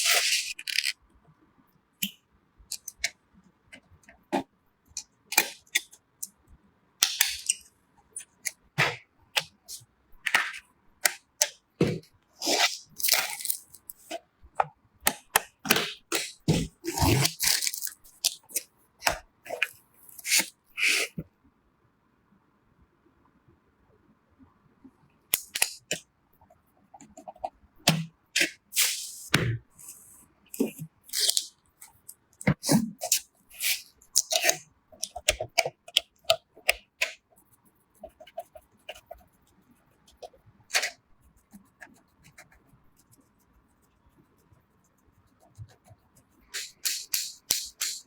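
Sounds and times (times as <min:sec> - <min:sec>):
computer parts clicking and scraping: 0:00.0 - 0:01.0.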